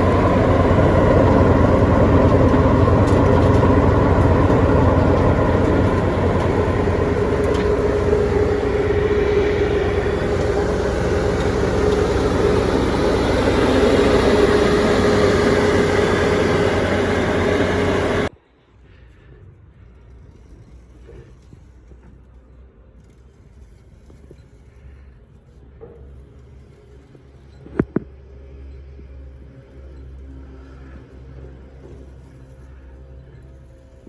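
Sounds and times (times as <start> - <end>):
wood chipper running: 0.0 - 18.3.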